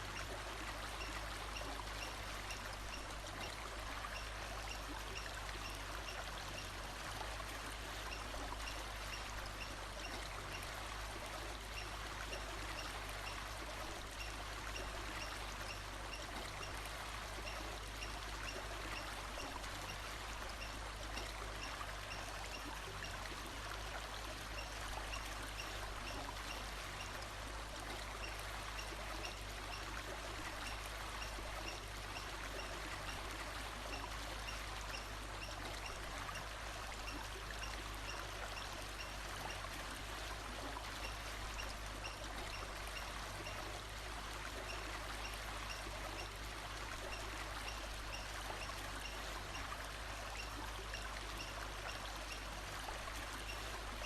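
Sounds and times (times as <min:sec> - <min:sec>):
stream running water: 0:00.0 - 0:54.0.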